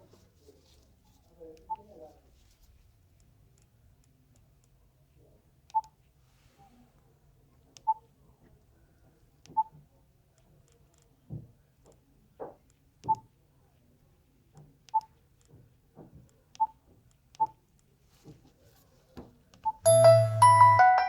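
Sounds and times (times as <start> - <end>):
phone key beeps: 19.7 - 21.0.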